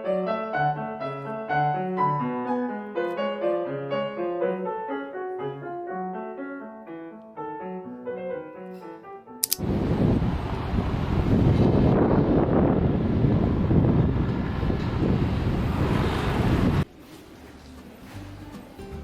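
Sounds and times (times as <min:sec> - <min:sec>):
solo piano melody: 0:00.0 - 0:09.4.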